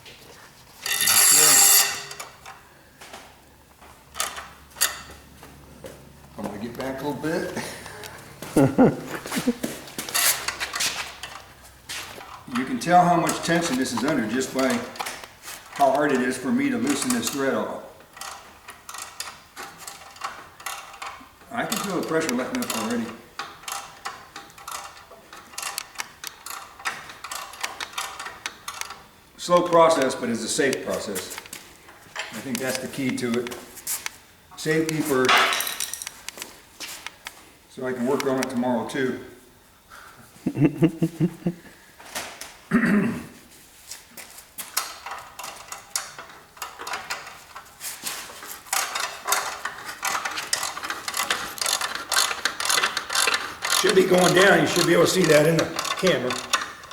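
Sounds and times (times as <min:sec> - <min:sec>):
ratcheting wrench clicking: 0:00.8 - 0:02.6, 0:18.1 - 0:30.8, 0:44.7 - 0:47.7, 0:48.4 - 0:56.9.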